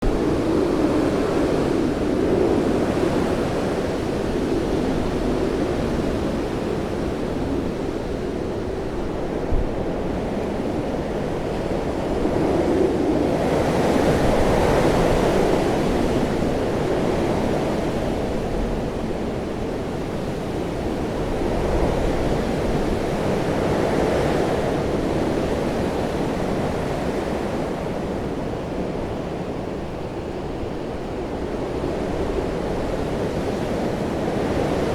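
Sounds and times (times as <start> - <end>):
storm wind gusting: 0.0 - 19.9.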